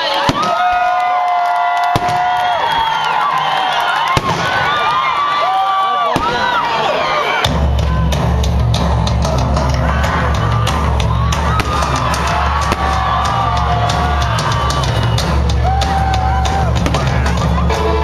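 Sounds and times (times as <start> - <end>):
firework bangs and crackles: 0.0 - 6.8, 11.0 - 17.7
rock music with heavy drums: 7.4 - 18.0.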